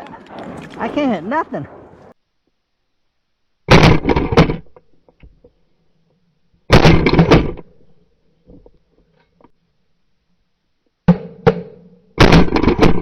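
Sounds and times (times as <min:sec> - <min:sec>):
shotgun shots with echo: 0:03.7 - 0:04.6, 0:06.7 - 0:07.6, 0:12.2 - 0:13.0.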